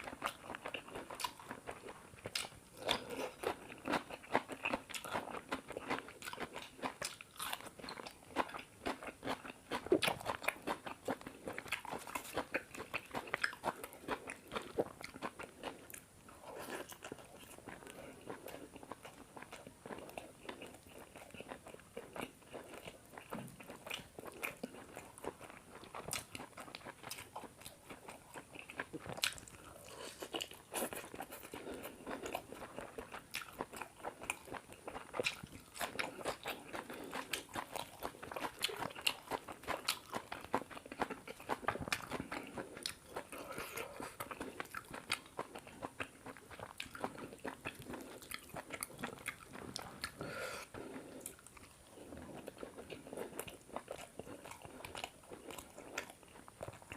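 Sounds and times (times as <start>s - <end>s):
person chewing food: 0.0s - 56.9s.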